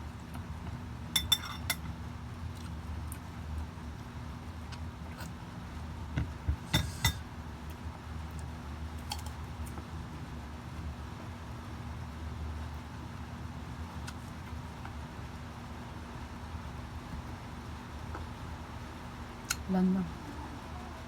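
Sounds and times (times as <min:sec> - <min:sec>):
steady low hum: 0:00.0 - 0:21.0
utensils clinking against a dish: 0:01.2 - 0:01.9, 0:06.7 - 0:07.2.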